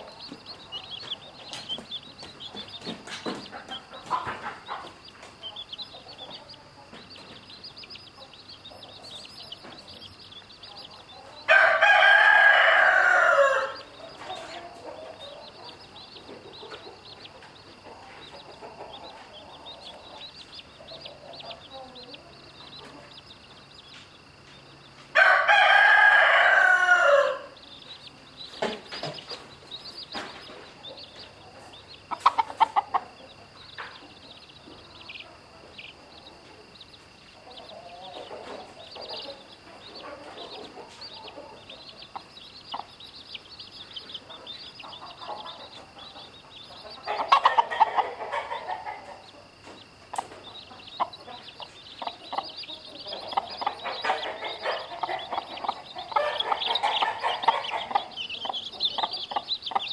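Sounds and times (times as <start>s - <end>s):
chicken clucking: 0.0s - 59.9s
chicks peeping: 0.0s - 59.9s
rooster crowing: 11.3s - 14.0s, 25.1s - 27.6s, 53.6s - 58.6s
loud chicken call: 11.5s - 13.9s, 25.2s - 27.6s.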